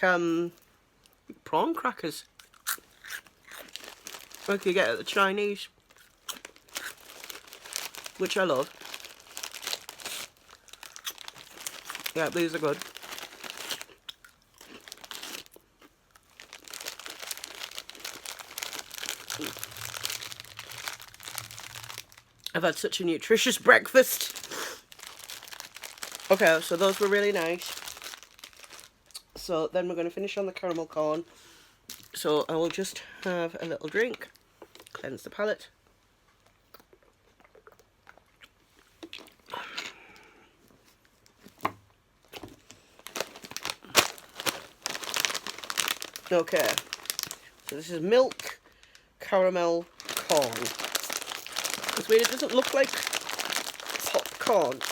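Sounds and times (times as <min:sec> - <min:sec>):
crisps being crunched: 0:02.2 - 0:29.3, 0:42.2 - 0:49.1, 0:49.8 - 0:54.9
snack packet crinkling: 0:02.3 - 0:29.3, 0:42.2 - 0:49.1, 0:49.8 - 0:54.9
person sipping a drink: 0:39.4 - 0:40.6.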